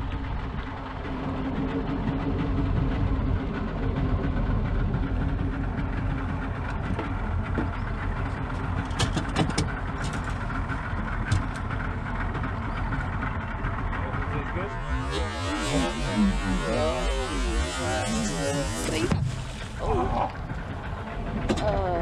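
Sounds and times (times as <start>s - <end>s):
boat engine running: 0.0s - 22.0s.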